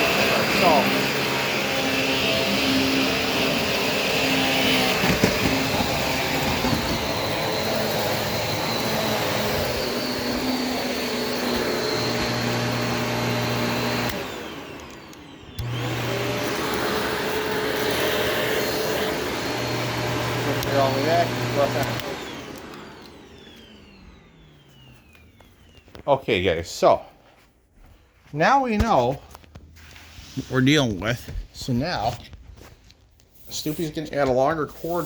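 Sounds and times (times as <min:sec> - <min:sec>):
motor winding down whine: 0:00.0 - 0:26.0
vacuum cleaner running: 0:00.0 - 0:27.0, 0:33.4 - 0:35.0.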